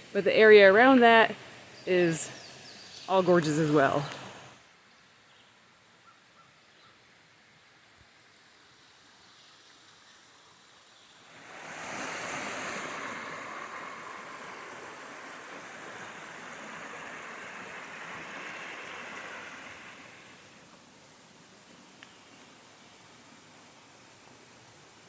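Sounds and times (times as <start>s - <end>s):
waterfall roaring: 11.2s - 20.6s.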